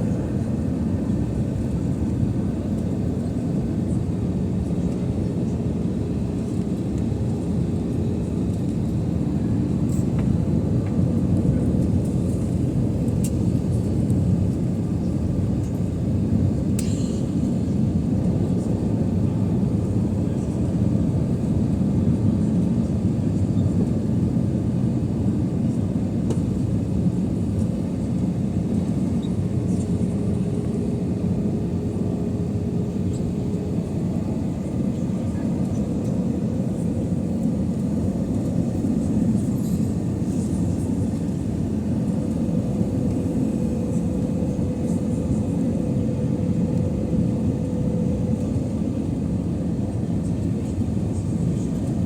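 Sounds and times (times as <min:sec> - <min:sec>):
jet engine rumble: 0:00.0 - 0:52.0
faint hum: 0:28.8 - 0:52.0.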